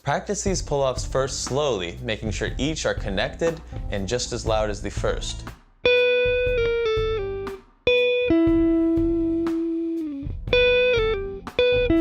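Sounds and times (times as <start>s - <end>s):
clean electric guitar phrase: 5.9s - 12.0s.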